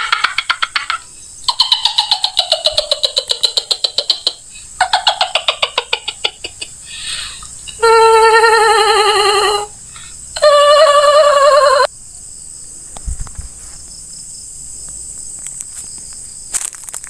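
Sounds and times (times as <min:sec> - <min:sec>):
bird trilling call: 0:00.0 - 0:06.2.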